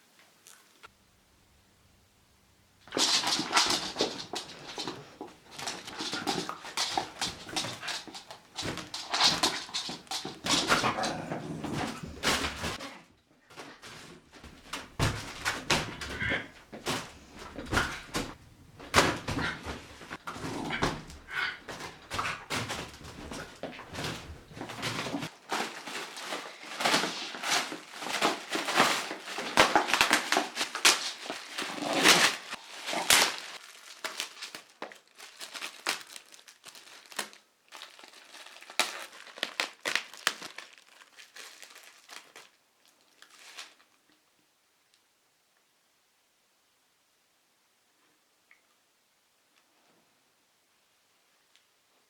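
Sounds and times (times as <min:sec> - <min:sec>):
crinkling and rustling: 0:02.8 - 0:44.3.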